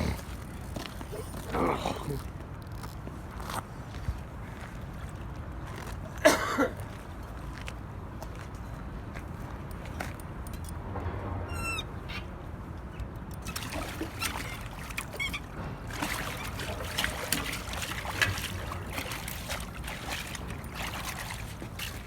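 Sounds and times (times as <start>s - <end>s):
bird call: 11.5s - 12.3s
river water splashing: 13.4s - 22.0s.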